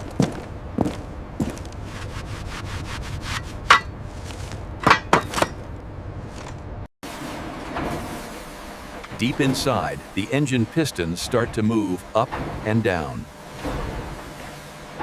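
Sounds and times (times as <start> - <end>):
steady low hum: 0.0 - 6.9
wood being struck and handled: 3.2 - 5.7.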